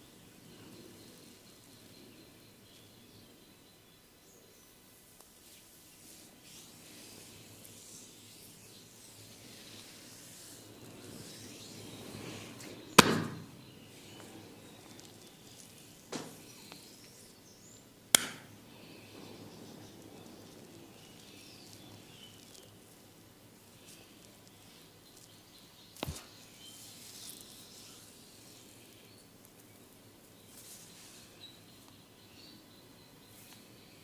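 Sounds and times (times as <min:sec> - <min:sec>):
hands rustling on hair: 0:05.2 - 0:17.4
hands hitting head: 0:13.0 - 0:13.4, 0:18.1 - 0:18.5.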